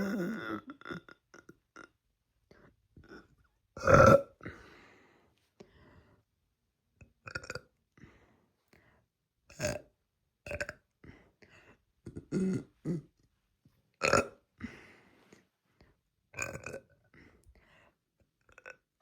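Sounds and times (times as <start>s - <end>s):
girl burping loudly: 0.0s - 1.9s, 3.8s - 4.5s, 12.1s - 13.1s, 14.0s - 14.4s.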